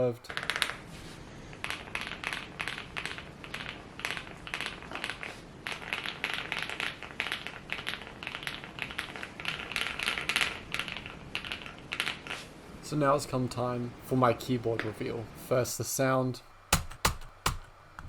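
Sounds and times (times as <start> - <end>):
mechanical keyboard typing: 16.7 - 17.7.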